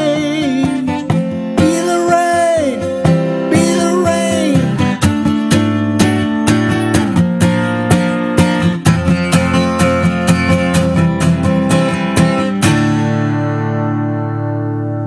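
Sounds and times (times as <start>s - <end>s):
acoustic guitar strumming chords: 0.0s - 15.0s.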